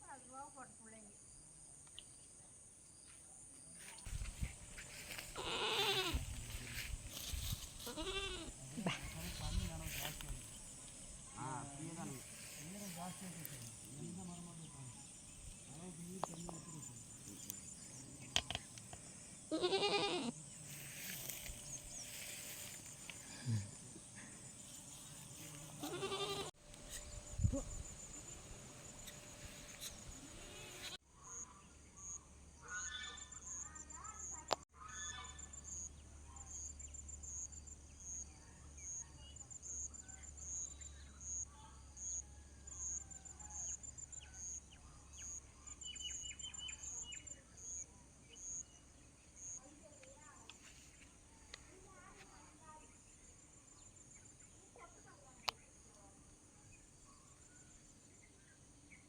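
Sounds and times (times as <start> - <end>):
animal bleating: 5.4 - 6.3, 7.8 - 9.8, 19.5 - 20.4, 25.8 - 26.5, 30.2 - 31.0.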